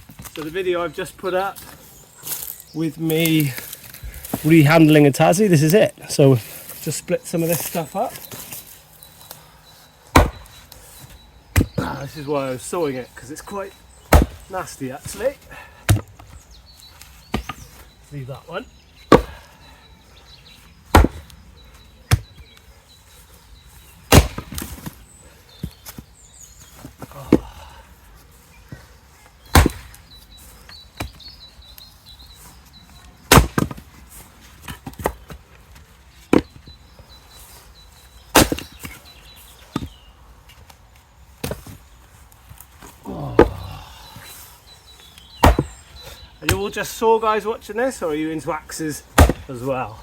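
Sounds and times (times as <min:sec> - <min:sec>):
axe splitting firewood: 0:10.1 - 0:10.8, 0:11.5 - 0:12.2, 0:13.5 - 0:16.5, 0:17.3 - 0:17.8, 0:19.0 - 0:19.6, 0:20.9 - 0:21.4, 0:24.1 - 0:25.0, 0:26.8 - 0:27.7, 0:29.5 - 0:30.1, 0:33.3 - 0:34.0, 0:38.3 - 0:39.0, 0:41.4 - 0:41.8, 0:42.5 - 0:43.9, 0:45.4 - 0:47.0, 0:49.1 - 0:49.8.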